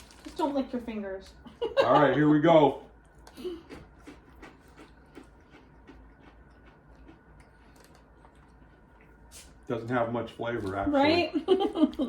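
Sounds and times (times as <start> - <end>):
person chewing crackers: 3.0 - 9.6.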